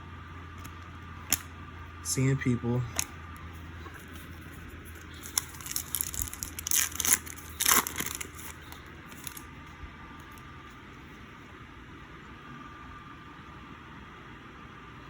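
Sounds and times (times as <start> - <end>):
foil wrapper crinkling and tearing: 4.3 - 9.5.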